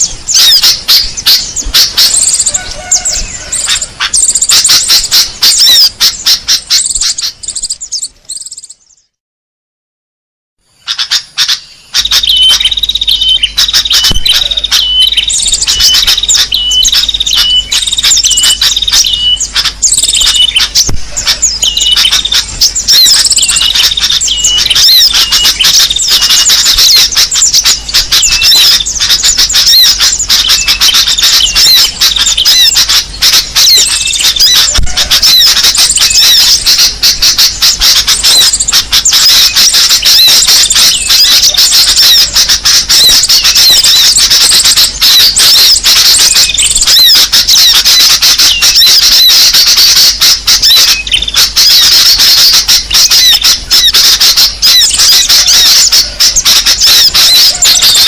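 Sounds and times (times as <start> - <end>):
small birds chirping and twittering: 0.0 - 9.2, 10.6 - 58.0
short repeating chirp: 10.9 - 42.2.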